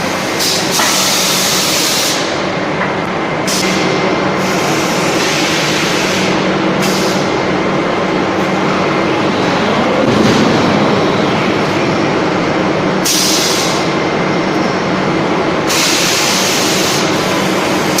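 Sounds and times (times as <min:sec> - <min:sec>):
machinery mechanical din: 0:06.3 - 0:17.4.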